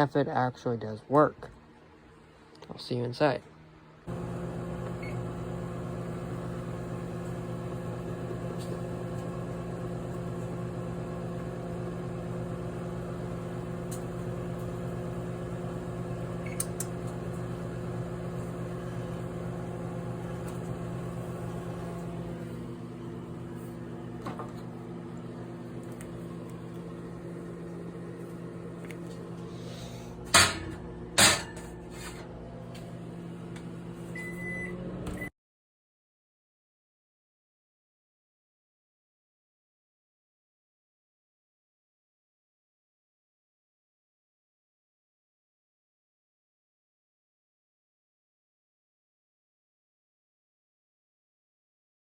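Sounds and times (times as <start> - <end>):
electrical hum with low buzz: 3.9 - 35.2.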